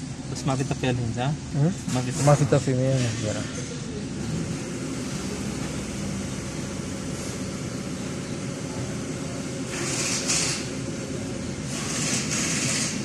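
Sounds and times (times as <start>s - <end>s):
car engine idling: 3.7s - 10.0s.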